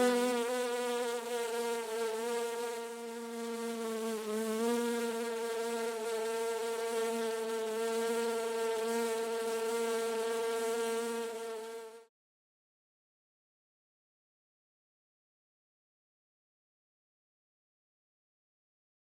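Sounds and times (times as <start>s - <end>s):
bee buzzing in flight: 0.0s - 12.1s.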